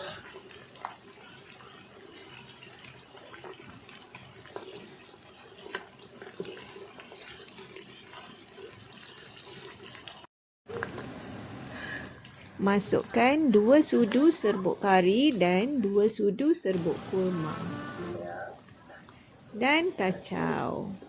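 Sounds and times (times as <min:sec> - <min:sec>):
spices sizzling in hot oil: 0:00.0 - 0:16.2.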